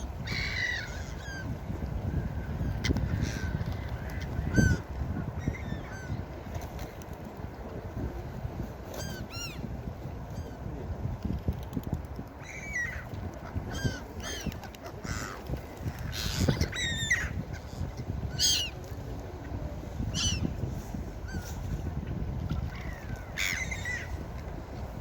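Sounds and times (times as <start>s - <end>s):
seagulls calling: 0.0s - 1.6s, 2.6s - 6.3s, 12.4s - 18.8s, 20.1s - 20.6s, 22.5s - 24.2s.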